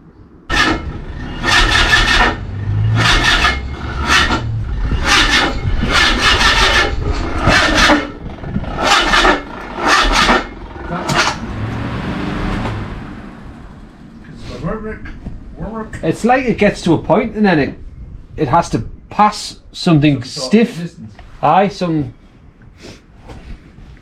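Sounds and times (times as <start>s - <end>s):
engine cranking without starting: 0.5s - 14.2s.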